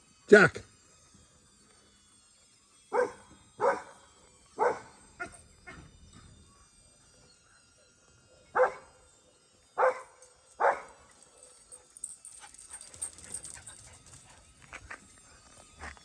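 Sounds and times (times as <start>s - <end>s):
dog barking: 2.9s - 3.9s, 4.6s - 5.3s, 8.6s - 8.9s, 9.8s - 11.0s.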